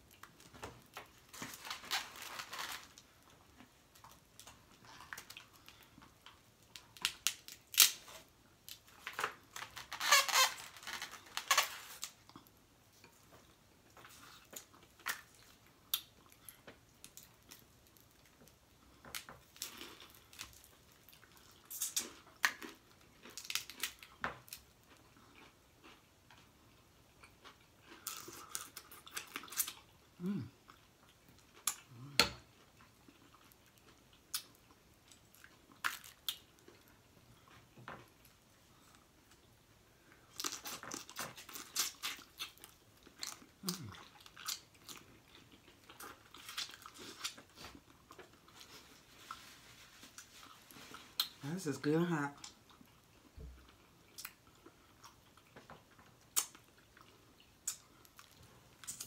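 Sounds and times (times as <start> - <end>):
crab shells cracking and snapping: 6.7 - 9.8, 19.0 - 24.7, 57.6 - 59.0.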